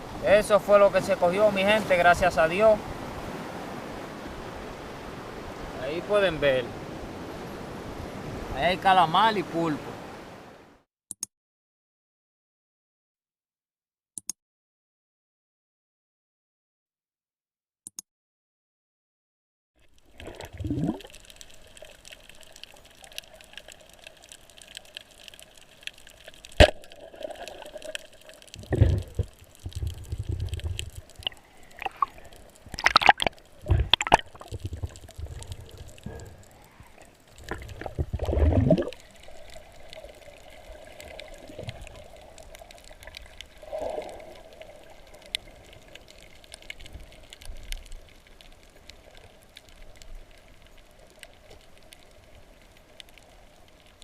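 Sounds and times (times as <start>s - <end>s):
water sloshing and bubbling: 0.0s - 5.9s, 19.8s - 54.0s
water gurgling surges: 0.0s - 10.6s, 20.0s - 23.9s, 26.4s - 47.4s.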